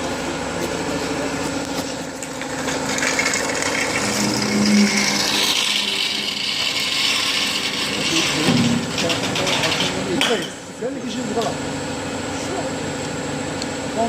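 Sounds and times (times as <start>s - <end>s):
industrial vacuum blower: 0.0s - 9.1s.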